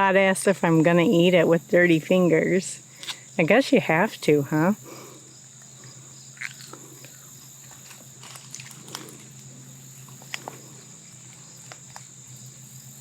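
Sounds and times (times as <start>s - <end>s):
crickets chirring: 0.0s - 13.0s
handling clicks and rustles: 5.6s - 12.7s.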